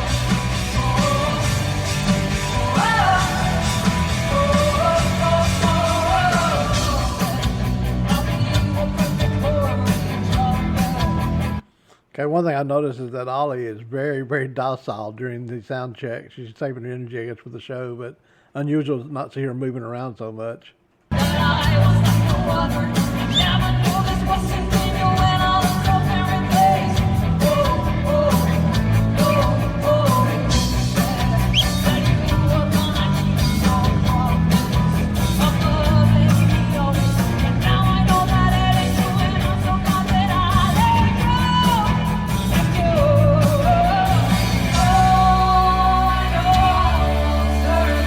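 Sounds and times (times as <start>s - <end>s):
woman singing: 0.0s - 11.2s, 21.1s - 48.0s
distant rock band playing: 0.0s - 11.6s, 21.1s - 48.0s.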